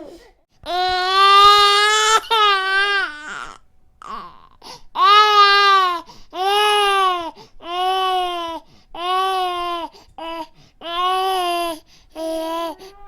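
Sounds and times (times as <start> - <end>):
infant crying: 0.6 - 13.0.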